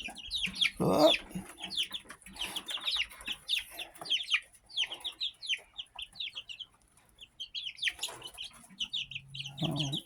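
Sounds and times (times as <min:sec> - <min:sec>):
chicks peeping: 0:00.0 - 0:10.0.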